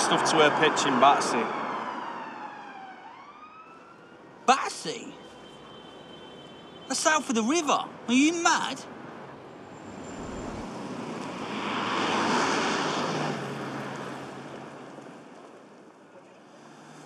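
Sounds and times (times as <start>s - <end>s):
vehicle passing by: 9.8s - 14.5s.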